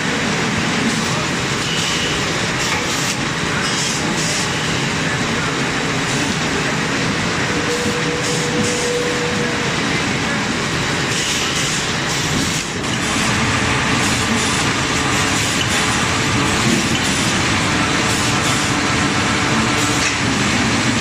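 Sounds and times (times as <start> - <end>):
veneer peeling lathe running: 12.8 - 20.7.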